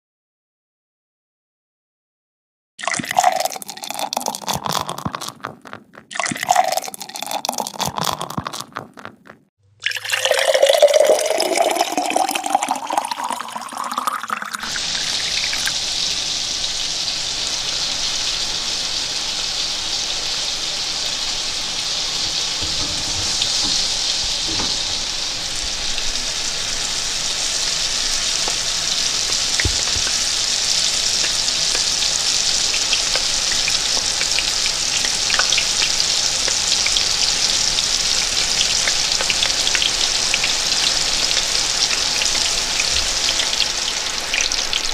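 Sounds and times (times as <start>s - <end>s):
liquid pouring into pot: 2.8s - 5.5s, 6.1s - 8.7s, 9.8s - 15.8s, 22.2s - 26.2s, 27.4s - 40.4s
food frying in hot oil: 3.2s - 5.8s, 11.0s - 44.9s.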